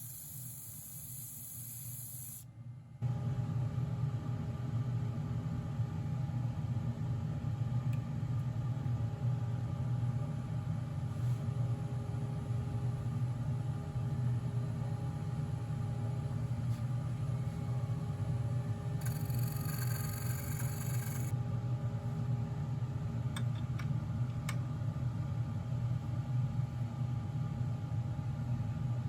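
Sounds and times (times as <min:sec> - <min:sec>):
steady high hiss: 0:00.0 - 0:02.4
electric motor hum with whine: 0:00.0 - 0:03.3, 0:08.8 - 0:21.4.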